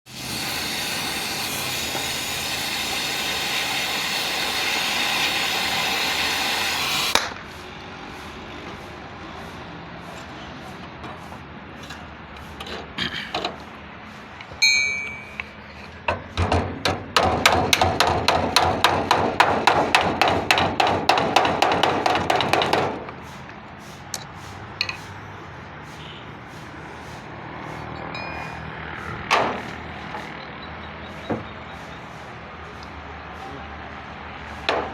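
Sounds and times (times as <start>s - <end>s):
welding crackling hiss: 0.1s - 7.7s
shop noise: 0.1s - 34.9s.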